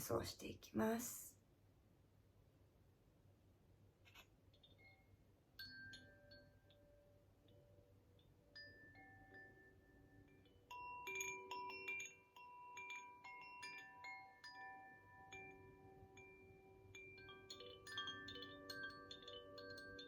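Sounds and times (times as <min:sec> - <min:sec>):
wind chime ringing: 0:04.6 - 0:07.9, 0:08.5 - 0:20.0.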